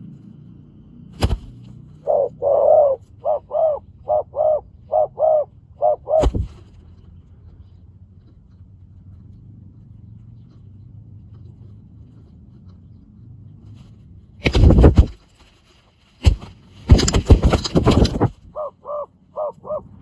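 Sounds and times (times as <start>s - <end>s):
faint low hum: 0.0s - 20.0s
wings flapping rapidly: 1.2s - 1.6s, 6.1s - 6.8s, 14.4s - 15.6s, 16.2s - 18.5s.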